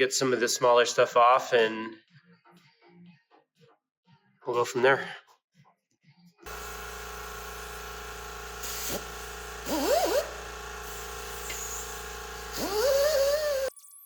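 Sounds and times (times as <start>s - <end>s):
steady hum: 6.5s - 13.7s
wire wheel power tool spinning: 6.5s - 13.7s.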